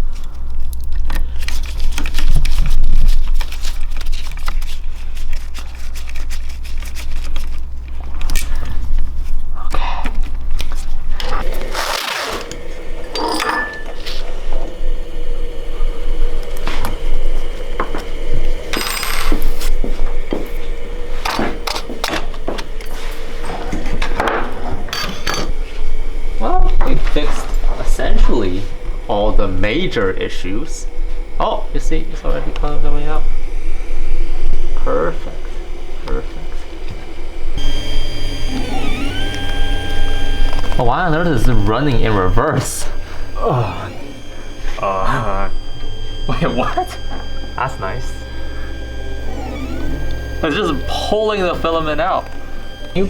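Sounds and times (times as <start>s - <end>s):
steady low hum: 0.0s - 53.0s
tools knocking and clinking: 13.1s - 14.1s, 24.2s - 25.6s.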